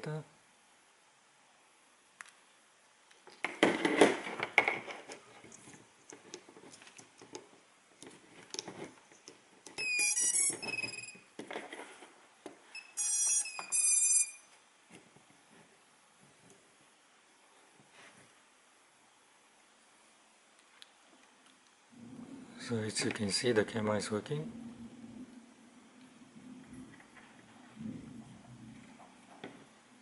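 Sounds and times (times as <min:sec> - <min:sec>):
electronic startup tones: 0:09.8 - 0:11.2.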